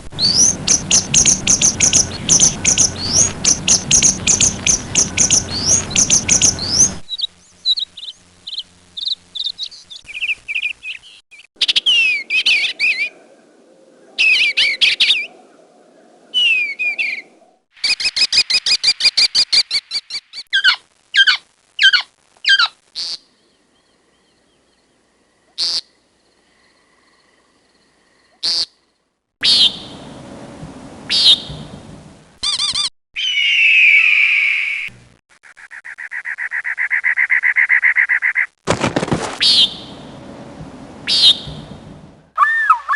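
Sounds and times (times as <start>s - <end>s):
bird calls and songs: 0.2s - 13.3s, 14.0s - 15.4s, 16.3s - 20.7s, 41.1s - 41.8s.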